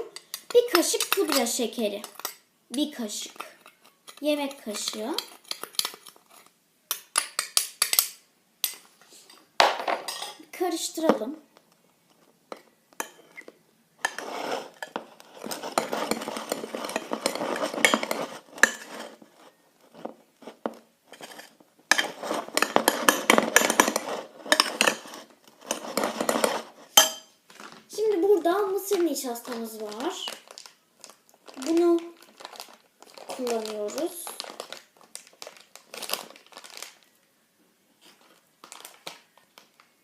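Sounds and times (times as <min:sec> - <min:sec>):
spoon scraping a bowl: 0:13.0 - 0:19.6, 0:20.5 - 0:27.3.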